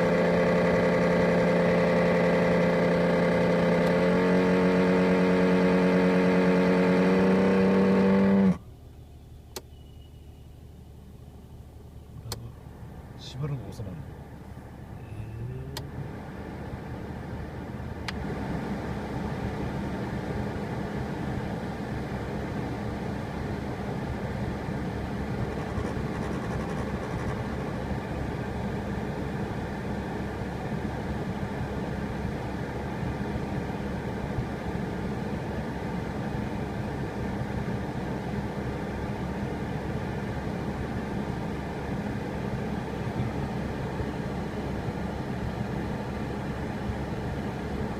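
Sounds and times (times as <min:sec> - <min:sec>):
sharp click: 0:12.2 - 0:12.5
blower fan motor buzzing drone: 0:24.4 - 0:29.9.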